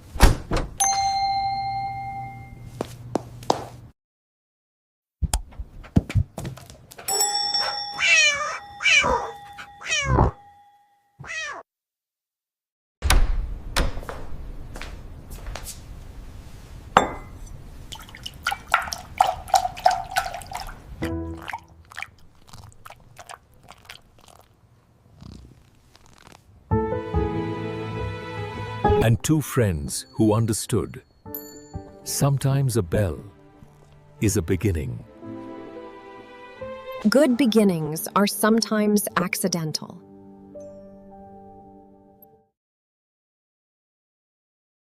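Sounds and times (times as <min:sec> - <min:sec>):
steady ringing tone: 0:00.8 - 0:02.7, 0:07.1 - 0:11.2
cat meowing: 0:08.0 - 0:10.4, 0:11.2 - 0:11.6.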